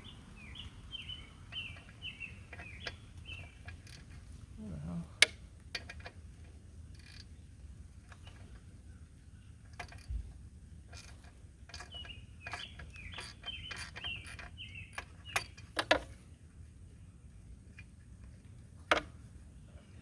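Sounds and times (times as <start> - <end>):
ratchet clicking: 9.7 - 10.1, 10.9 - 15.9.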